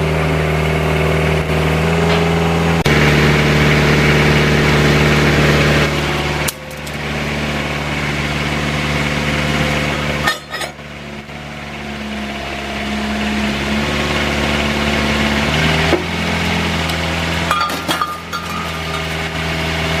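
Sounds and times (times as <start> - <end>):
excavator diesel engine: 0.0 - 20.0
sharp metallic clanks: 10.2 - 10.8, 16.8 - 19.4.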